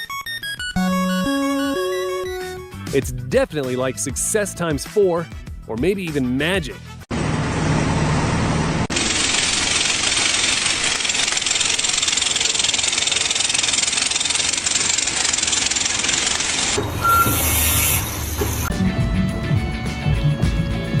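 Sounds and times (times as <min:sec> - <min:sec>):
low engine hum: 0:07.1 - 0:10.9
loud hissing mechanical noise: 0:07.1 - 0:18.7.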